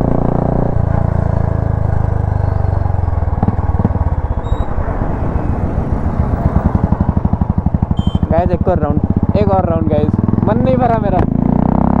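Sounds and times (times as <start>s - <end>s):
exhaust backfire cracks: 2.6s - 11.2s.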